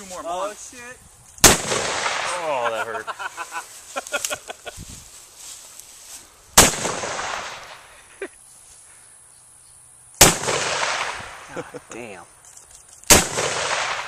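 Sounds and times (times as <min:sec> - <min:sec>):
gunshot with echo: 0:06.6 - 0:07.8, 0:10.2 - 0:11.5, 0:13.1 - 0:14.0.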